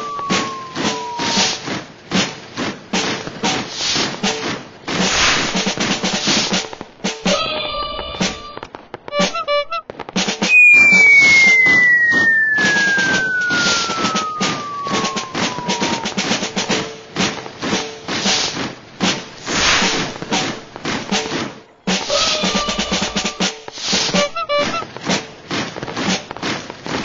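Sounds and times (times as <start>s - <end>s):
whistle tone sliding down: 0.0s - 1.6s, 10.5s - 16.3s
snare drum roll: 0.0s - 27.0s.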